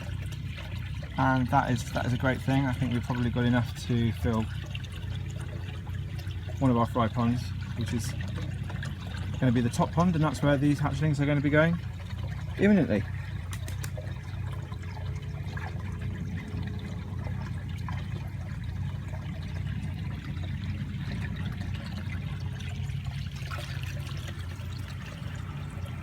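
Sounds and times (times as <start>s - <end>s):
water pouring and trickling: 0.0s - 26.0s
low rumble: 11.8s - 26.0s.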